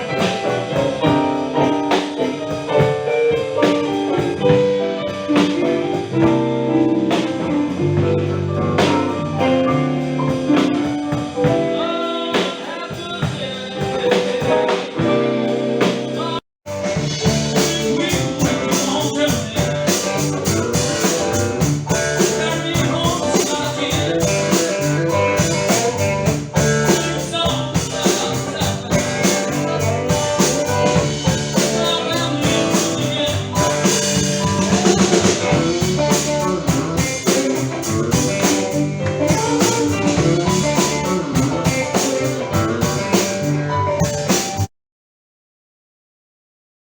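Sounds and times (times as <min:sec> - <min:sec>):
drums and cymbals: 0:00.0 - 0:44.7
live band music: 0:00.0 - 0:44.7.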